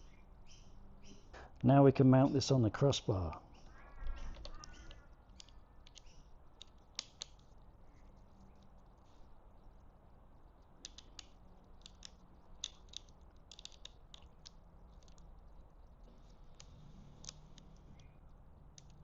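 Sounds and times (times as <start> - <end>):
low steady hum: 0.0 - 19.0
small clicks of hardware: 3.3 - 7.5, 10.8 - 15.3, 16.2 - 19.0.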